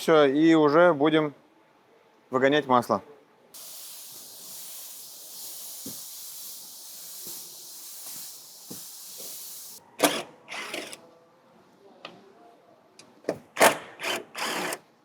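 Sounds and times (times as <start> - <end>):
suction pump hissing: 3.6 - 11.0.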